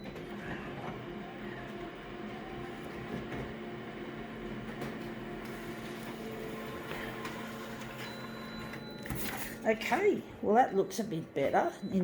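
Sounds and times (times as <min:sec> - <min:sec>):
photocopier humming: 0:00.0 - 0:12.0.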